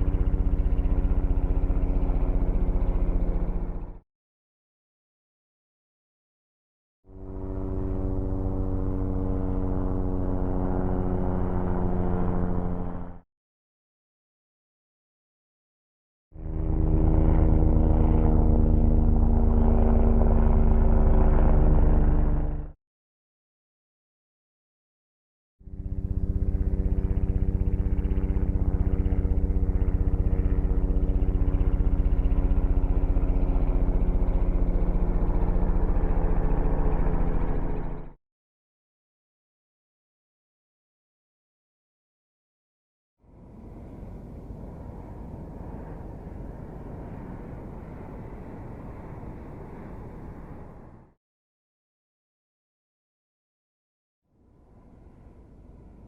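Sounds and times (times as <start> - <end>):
propeller aircraft droning: 0.0 - 4.0, 7.1 - 13.2, 16.4 - 22.8, 25.7 - 38.2, 43.2 - 51.2, 54.4 - 56.0.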